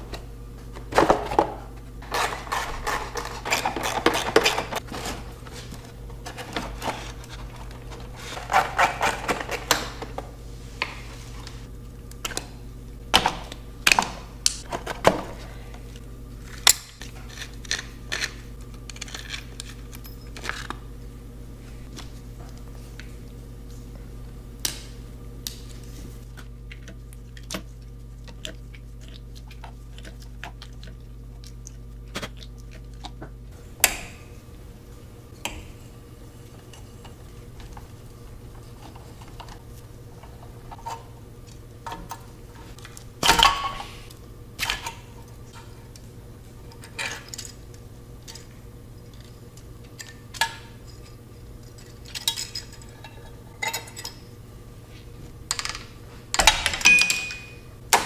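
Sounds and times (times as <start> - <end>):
steady low hum: 0.0 - 58.0
metal tools clinking: 56.4 - 57.7.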